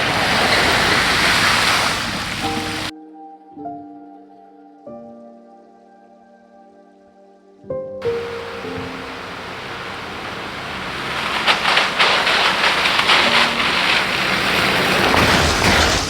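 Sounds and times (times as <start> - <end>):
steady rain falling: 0.0 - 2.9, 8.0 - 16.0.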